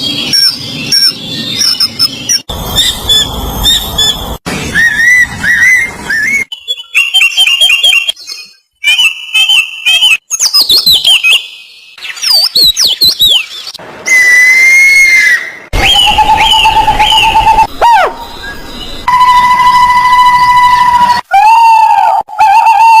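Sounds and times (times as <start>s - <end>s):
bird chirps and trills: 0.0s - 13.8s, 15.1s - 19.1s
long whistled bird notes: 14.1s - 21.3s.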